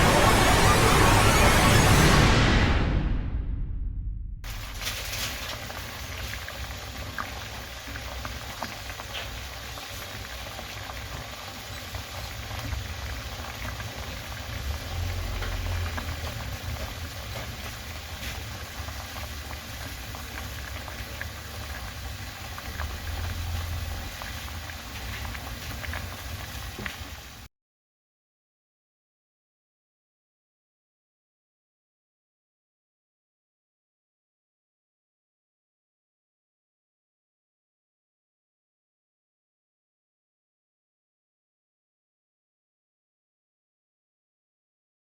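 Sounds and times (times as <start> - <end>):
low rumble: 0.0 - 5.1
water boiling in a pot: 4.5 - 27.5.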